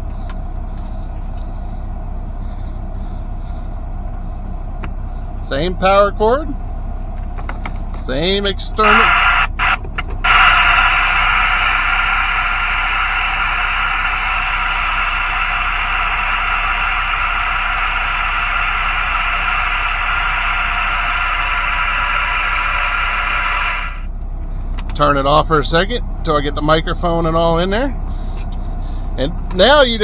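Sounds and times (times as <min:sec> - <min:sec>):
radio static hiss: 0:08.3 - 0:24.1.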